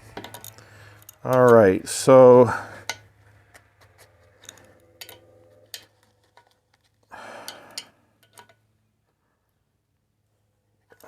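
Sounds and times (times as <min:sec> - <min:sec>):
faint metallic clicks and taps: 0:02.8 - 0:08.6.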